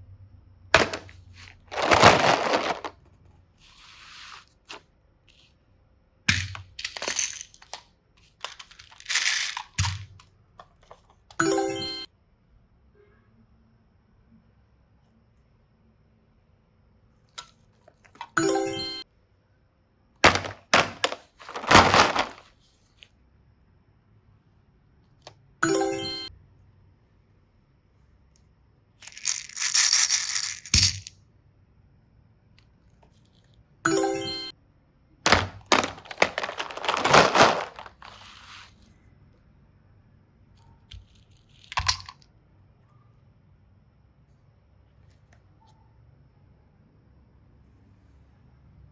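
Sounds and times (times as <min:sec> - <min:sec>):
packaging crinkling and tearing: 0:01.7 - 0:02.9, 0:20.3 - 0:22.5, 0:35.3 - 0:38.3.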